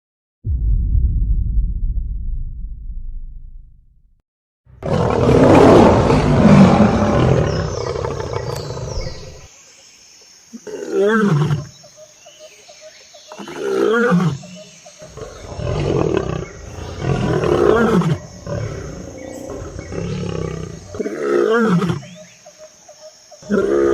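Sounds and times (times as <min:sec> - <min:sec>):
lion roaring: 0:04.8 - 0:09.5, 0:15.1 - 0:22.1.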